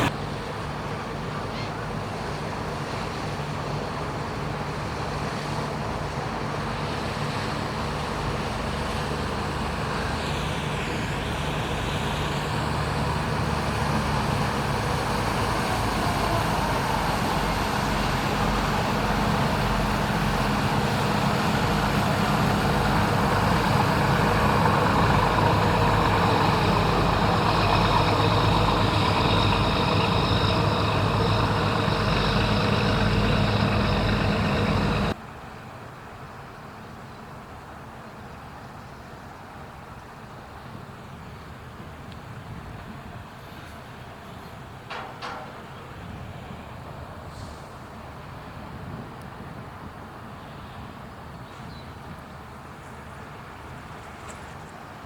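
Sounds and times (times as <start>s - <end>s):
heavy engine running: 0.0s - 35.2s.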